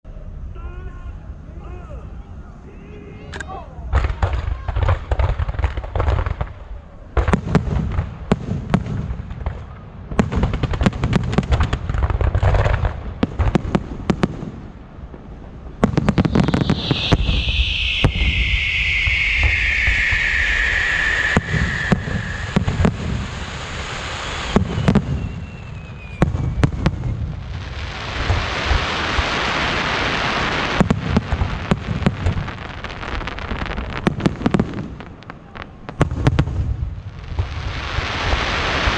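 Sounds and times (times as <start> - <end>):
crackling firework hiss: 3.9 - 38.9
fireworks bangs and crackling: 3.9 - 38.9
falling firework whistle: 15.8 - 36.5.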